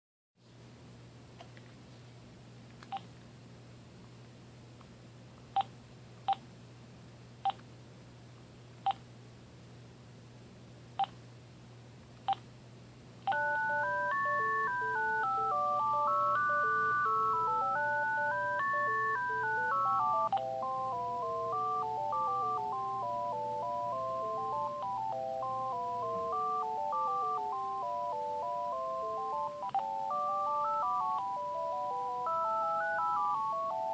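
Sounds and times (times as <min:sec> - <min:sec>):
phone key beeps: 0:13.3 - 0:33.9
polyphonic ringtone melody: 0:13.3 - 0:33.9.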